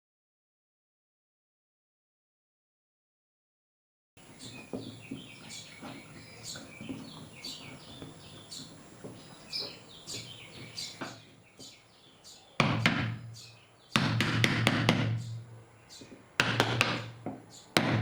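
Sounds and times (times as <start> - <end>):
faint knocks: 4.2 - 11.8
birds chirping: 4.2 - 18.0.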